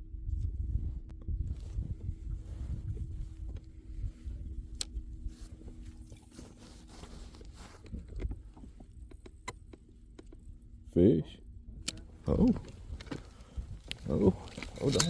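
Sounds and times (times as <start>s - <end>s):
wind rumble on microphone: 0.0s - 10.9s, 11.5s - 15.0s
faint steady hum: 0.0s - 15.0s
handling clicks and knocks: 12.4s - 15.0s.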